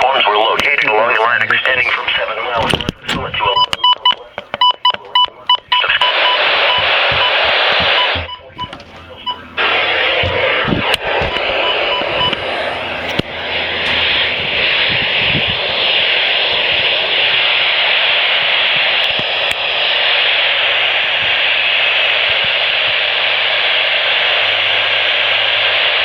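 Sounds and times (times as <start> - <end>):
radio static hiss: 0.0 - 26.0
radio clicks: 0.4 - 9.4, 10.1 - 12.4, 13.0 - 14.2.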